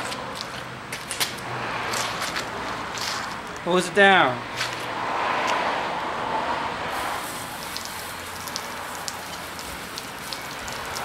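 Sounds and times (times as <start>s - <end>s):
hose spraying onto metal: 6.9s - 11.0s
water drops spattering: 7.6s - 11.0s.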